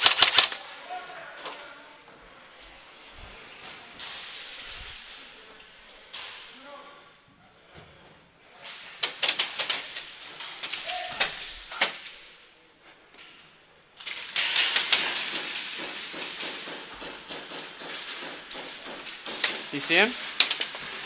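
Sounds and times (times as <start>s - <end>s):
airsoft guns firing: 0.0s - 0.6s, 14.4s - 20.7s
rustling noise: 2.2s - 6.3s.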